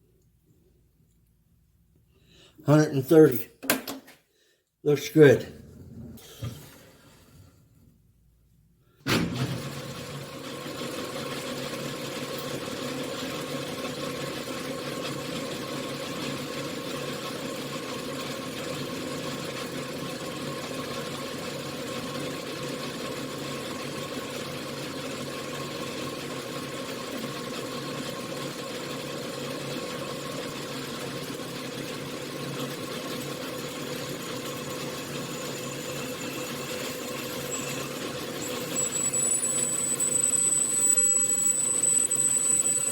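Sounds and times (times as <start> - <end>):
lathe running with hum and whine: 10.0 - 42.9.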